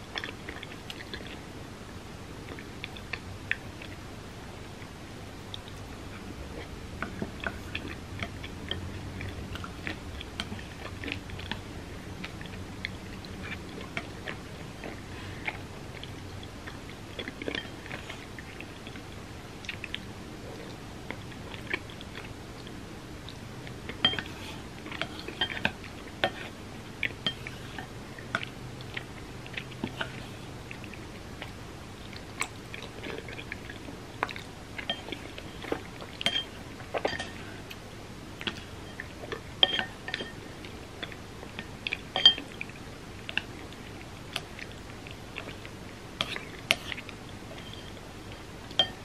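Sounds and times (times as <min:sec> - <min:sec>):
chewing with wet mouth clicks: 0:00.0 - 0:01.5, 0:02.4 - 0:04.0, 0:04.8 - 0:49.0.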